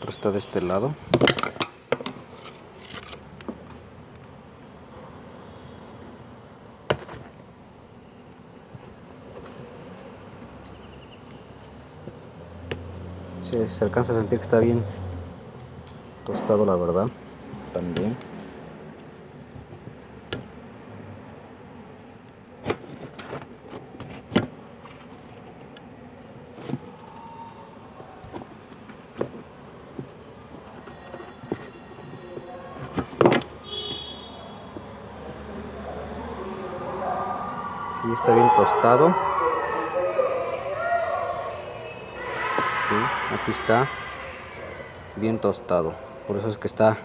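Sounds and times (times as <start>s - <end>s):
faint background noise: 0.0s - 47.0s.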